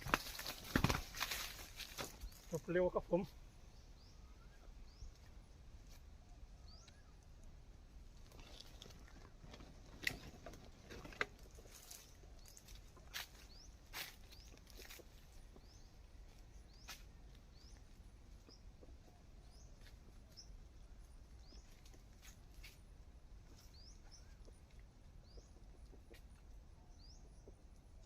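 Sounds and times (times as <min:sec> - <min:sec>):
faint high bird chirps: 0:02.0 - 0:05.3, 0:06.3 - 0:07.2, 0:23.5 - 0:24.6.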